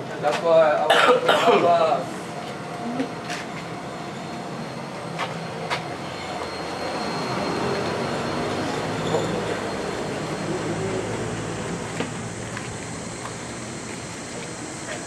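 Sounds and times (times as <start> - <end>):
machinery humming: 2.0 - 15.0.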